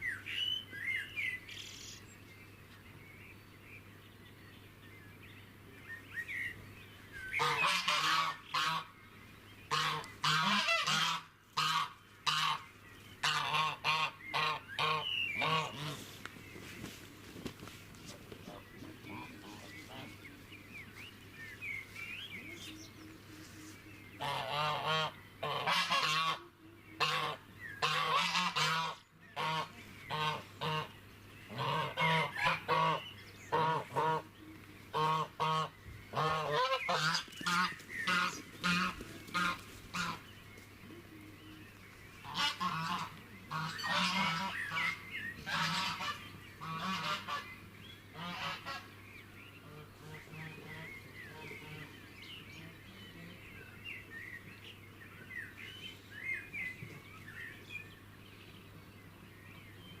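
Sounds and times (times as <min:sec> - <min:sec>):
small birds chirping: 0:00.0 - 1:00.0
geese honking: 0:07.4 - 0:09.0, 0:09.7 - 0:16.2, 0:18.3 - 0:20.4, 0:24.2 - 0:40.3, 0:42.2 - 0:49.0, 0:49.6 - 0:53.4.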